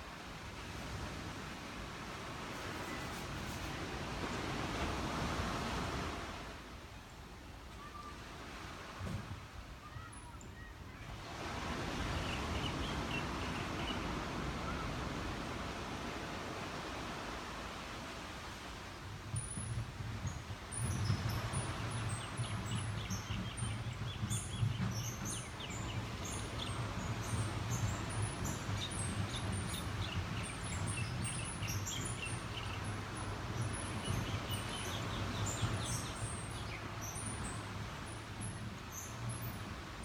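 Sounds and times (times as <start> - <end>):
small birds chirping: 20.8 - 37.6.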